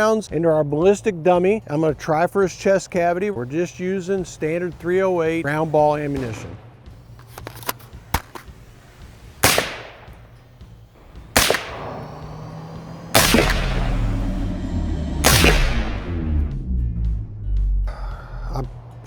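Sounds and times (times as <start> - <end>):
suppressed rifle shots: 5.9 - 14.6, 15.2 - 16.5
low steady rumble: 7.9 - 19.0.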